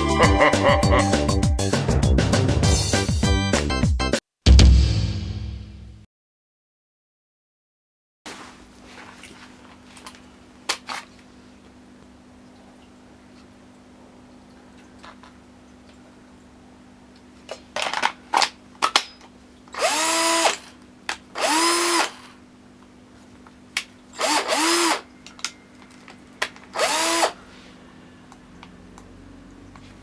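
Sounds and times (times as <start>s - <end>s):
cordless drill motor whine: 19.8s - 20.7s, 21.4s - 22.3s, 24.2s - 25.1s, 26.7s - 27.4s.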